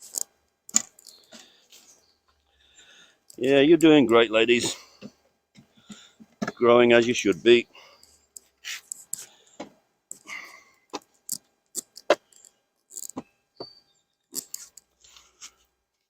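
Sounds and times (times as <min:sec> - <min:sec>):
beehive frames clicking and knocking: 0:00.0 - 0:01.5, 0:03.4 - 0:06.6.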